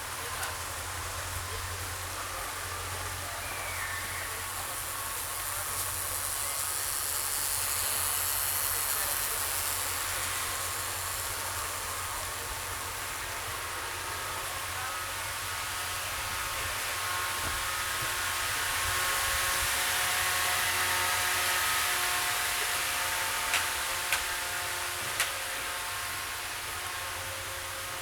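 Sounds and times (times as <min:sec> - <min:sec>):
distant voices murmuring: 0:00.0 - 0:28.0.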